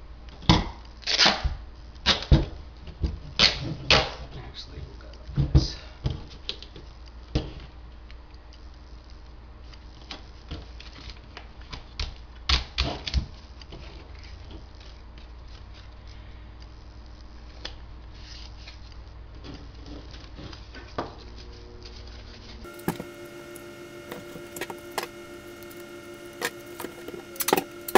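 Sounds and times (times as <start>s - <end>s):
steady low hum: 21.2s - 27.9s.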